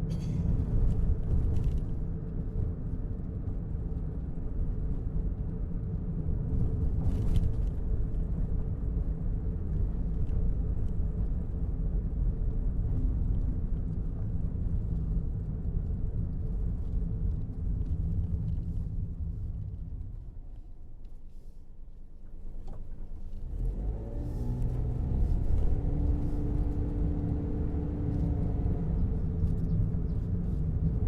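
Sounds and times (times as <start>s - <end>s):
car engine rumble: 0.0s - 31.0s
road noise: 16.9s - 31.0s.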